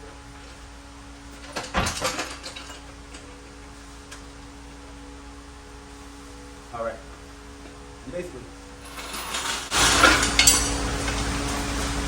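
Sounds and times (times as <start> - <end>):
steady low hum: 2.5 - 12.0.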